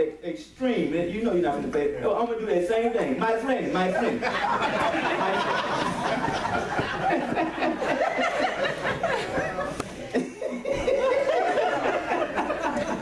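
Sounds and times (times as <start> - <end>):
congregation laughing and chattering: 2.8 - 13.0.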